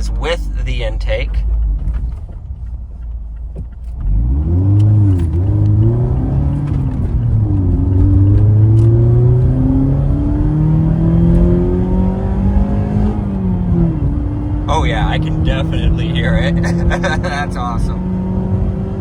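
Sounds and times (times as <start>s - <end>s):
car engine accelerating: 0.0s - 19.0s.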